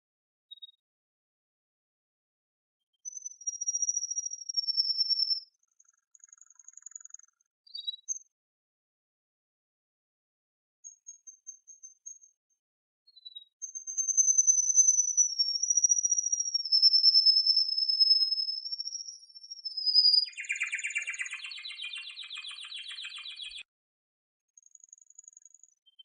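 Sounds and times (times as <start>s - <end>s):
canary singing: 14.6s - 23.6s.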